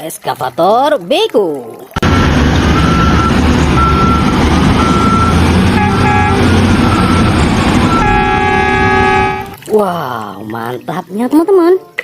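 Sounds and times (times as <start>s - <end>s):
heavy vehicle engine running: 2.0s - 9.6s
reversing alarm beeping: 2.1s - 9.6s
short horn toot: 7.9s - 9.6s.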